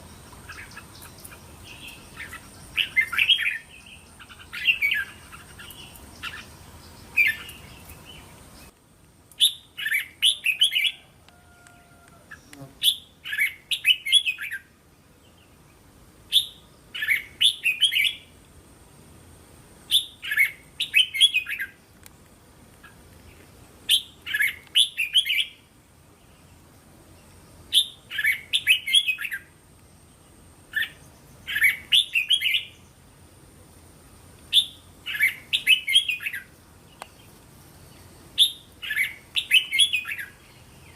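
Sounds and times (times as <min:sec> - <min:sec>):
bird singing whistled notes: 0:00.0 - 0:08.7, 0:09.4 - 0:11.1, 0:12.3 - 0:14.7, 0:16.3 - 0:18.3, 0:19.9 - 0:21.8, 0:23.9 - 0:25.6, 0:27.7 - 0:29.5, 0:30.7 - 0:32.9, 0:34.5 - 0:37.2, 0:38.4 - 0:40.9.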